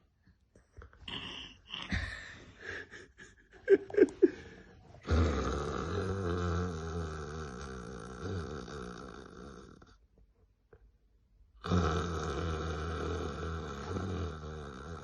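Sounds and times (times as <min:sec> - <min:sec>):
person snoring: 0:04.2 - 0:10.0, 0:11.6 - 0:15.0.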